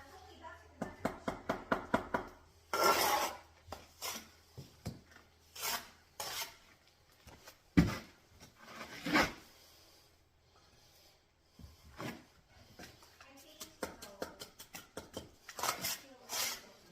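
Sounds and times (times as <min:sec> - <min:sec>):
trowel scraping mortar on brick: 0:02.7 - 0:04.6, 0:05.4 - 0:06.8, 0:08.6 - 0:09.7, 0:13.6 - 0:16.9.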